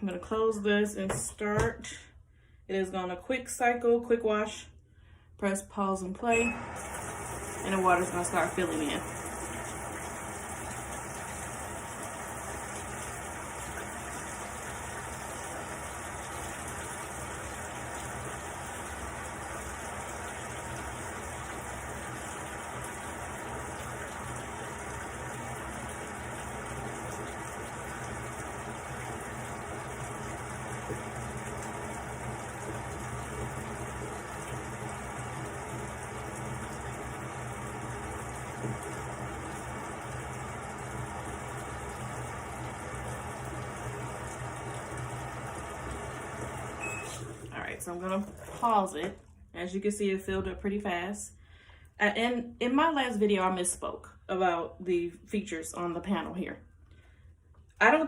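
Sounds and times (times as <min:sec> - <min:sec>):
water running into washing machine: 0:06.2 - 0:50.8.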